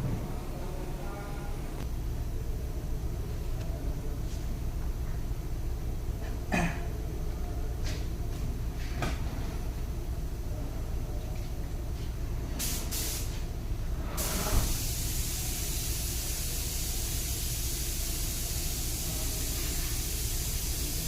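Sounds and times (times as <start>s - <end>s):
low steady hum: 0.0s - 12.6s
spray gun hissing: 12.6s - 13.4s, 14.1s - 21.0s.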